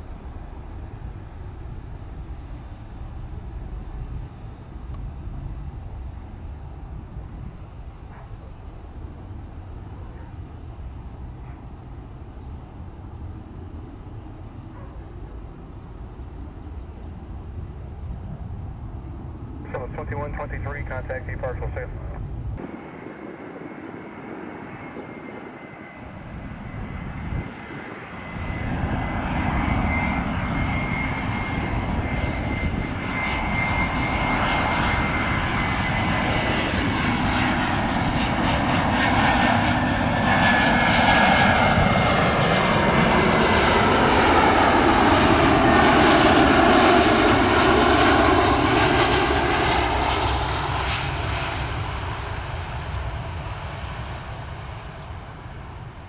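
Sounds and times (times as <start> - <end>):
jet airliner passing: 0.0 - 56.0.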